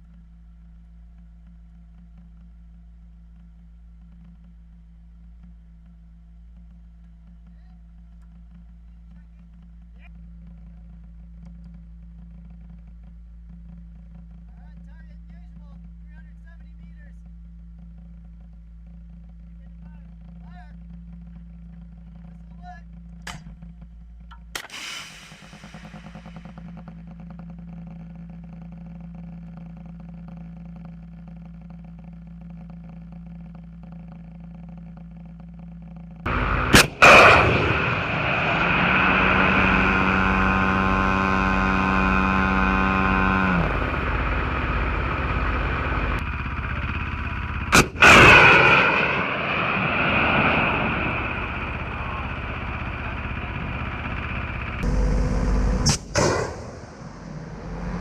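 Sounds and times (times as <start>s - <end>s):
steady low hum: 0.0s - 58.0s
missile launch blasts: 36.3s - 41.6s, 47.7s - 58.0s
rushing roar: 36.3s - 58.0s.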